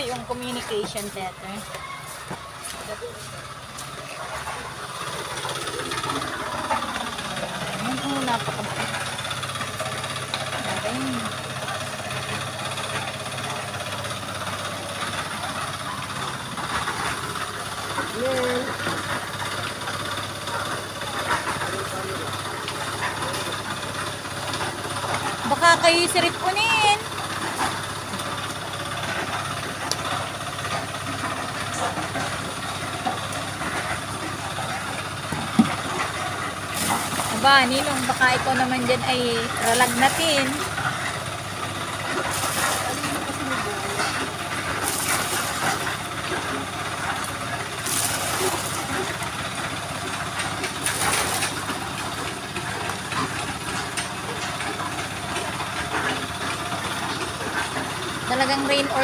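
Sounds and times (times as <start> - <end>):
engine low rumble: 0.0 - 59.0.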